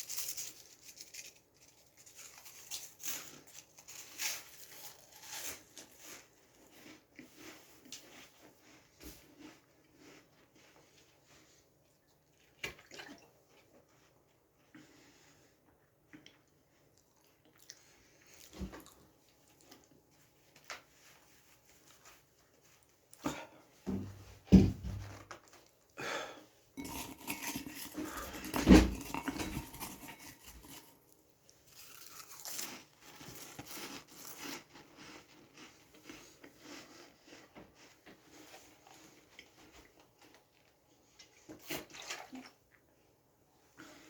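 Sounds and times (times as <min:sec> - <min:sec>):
person chewing crunchy crackers: 0:00.0 - 0:10.5, 0:26.8 - 0:40.7.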